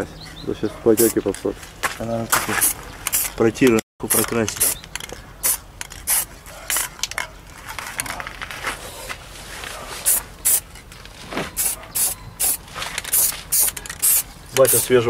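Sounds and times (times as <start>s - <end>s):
spray can hissing: 5.4s - 6.3s, 10.1s - 10.6s, 11.6s - 14.9s.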